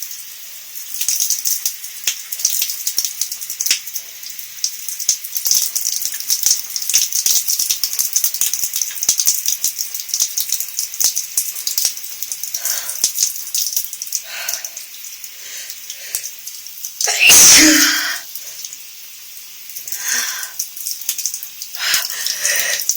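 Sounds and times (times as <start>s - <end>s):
short breaths: 12.6s - 13.1s, 14.2s - 16.4s, 17.1s - 18.7s, 19.9s - 20.6s, 21.8s - 22.9s
person sneezing: 17.1s - 18.2s.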